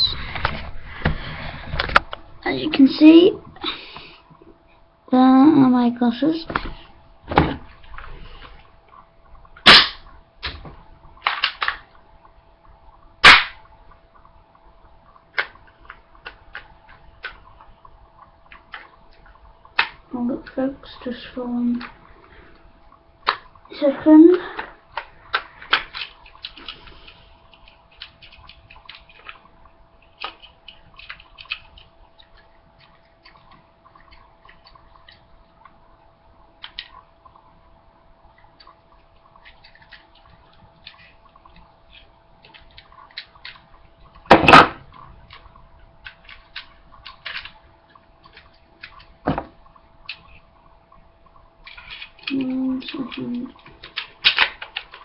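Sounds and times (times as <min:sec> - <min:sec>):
faint steady hum: 0:00.0 - 0:55.0
airsoft pistol shots: 0:09.6 - 0:10.0, 0:13.2 - 0:13.6.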